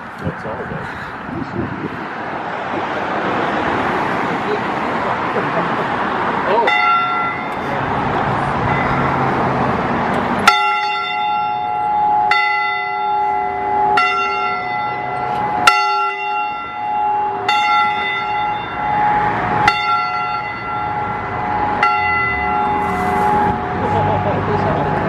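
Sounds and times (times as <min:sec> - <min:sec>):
church bell tolling: 0:06.5 - 0:07.9, 0:08.6 - 0:09.2, 0:10.4 - 0:25.0.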